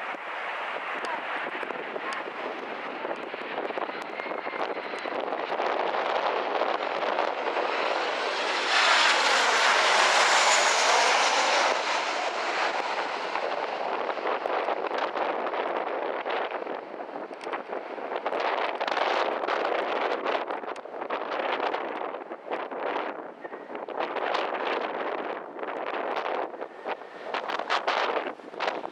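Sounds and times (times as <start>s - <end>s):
jet airliner passing: 0.0s - 20.1s.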